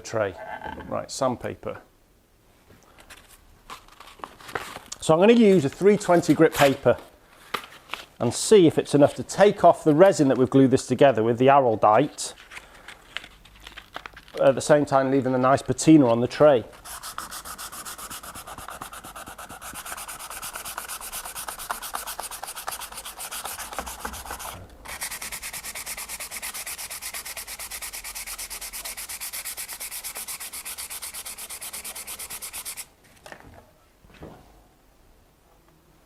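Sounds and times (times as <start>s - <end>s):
sandpaper rubbing on stone: 16.8s - 32.9s.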